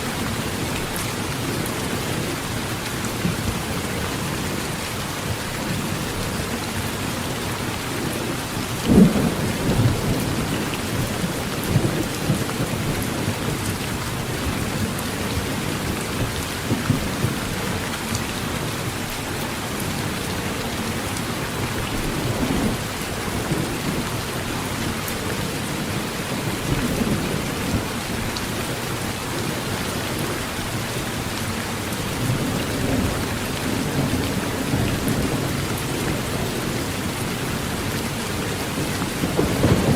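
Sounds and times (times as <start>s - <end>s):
heavy rain on a tin roof: 0.0s - 39.9s
low thunder rumbling: 8.0s - 17.9s, 32.1s - 39.9s.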